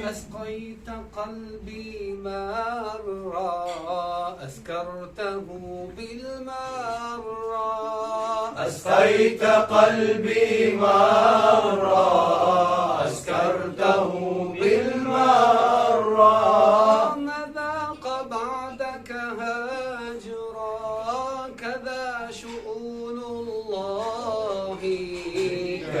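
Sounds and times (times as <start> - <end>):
men chanting a hymn: 7.9 - 18.0, 23.8 - 26.0.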